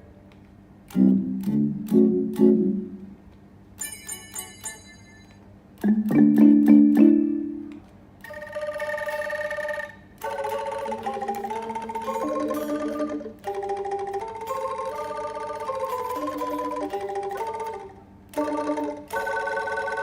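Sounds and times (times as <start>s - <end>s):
plucked guitar synth notes: 0.9s - 3.0s, 5.8s - 7.8s, 9.0s - 17.8s
bright bell-like synth tones: 3.8s - 5.4s.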